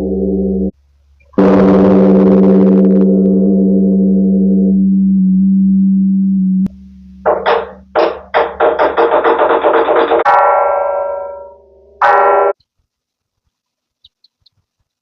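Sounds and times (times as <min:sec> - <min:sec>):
large temple bell ringing: 0:10.2 - 0:12.6.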